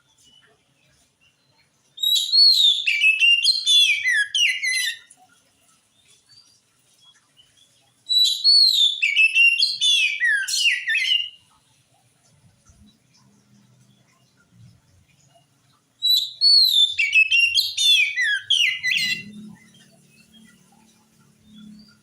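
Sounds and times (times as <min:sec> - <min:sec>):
bird whistled song: 0:02.0 - 0:05.1, 0:08.1 - 0:11.5, 0:16.0 - 0:22.0.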